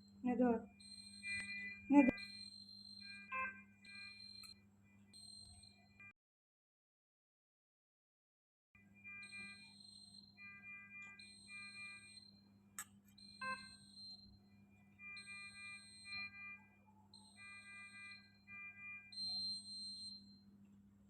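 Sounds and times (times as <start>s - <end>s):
electronic beeping tones: 0.3s - 4.6s, 9.0s - 12.4s, 13.2s - 14.4s, 15.0s - 20.4s.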